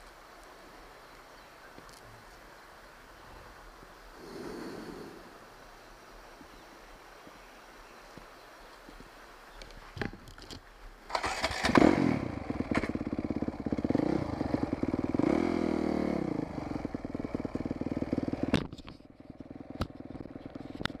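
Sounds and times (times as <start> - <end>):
dirt bike engine revving: 11.1 - 18.5
dirt bike engine idling: 11.1 - 21.0.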